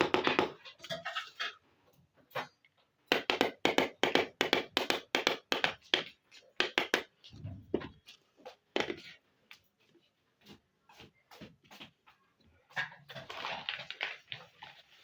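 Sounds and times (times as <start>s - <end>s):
plastic toy pieces tapping: 0.0s - 0.6s, 3.1s - 7.2s
soft low thump: 7.4s - 7.9s.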